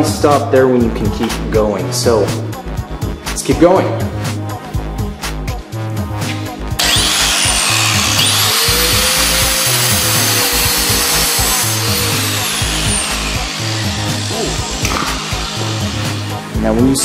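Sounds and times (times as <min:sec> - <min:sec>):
background music with steady beat: 0:00.0 - 0:17.0
angle grinder cutting metal: 0:06.8 - 0:17.0.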